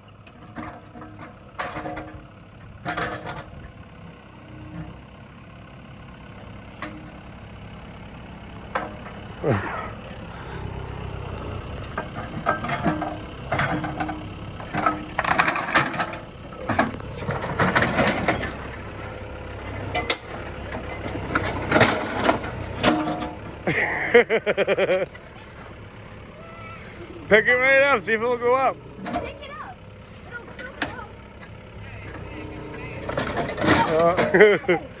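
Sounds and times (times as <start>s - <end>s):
metal clanks and crunches: 0.0s - 3.8s, 11.8s - 23.9s, 29.0s - 34.8s
excavator engine under load: 0.0s - 35.0s.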